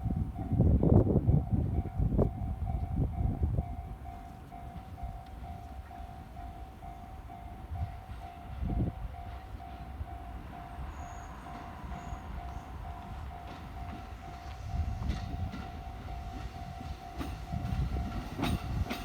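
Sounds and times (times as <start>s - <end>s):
train wheels clunking over rail joints: 7.8s - 19.0s.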